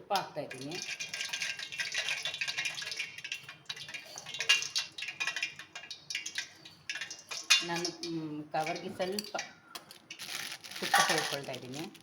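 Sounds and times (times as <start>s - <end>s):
kitchen utensils clicking: 10.8s - 11.8s.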